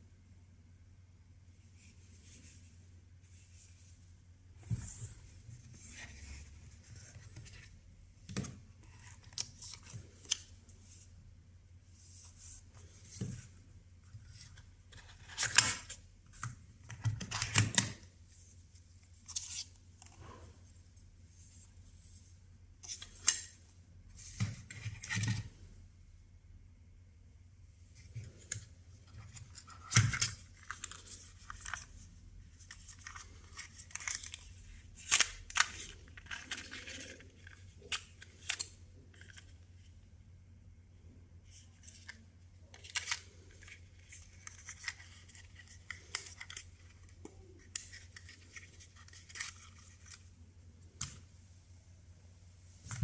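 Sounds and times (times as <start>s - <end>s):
hands handling packaging: 32.6s - 39.5s.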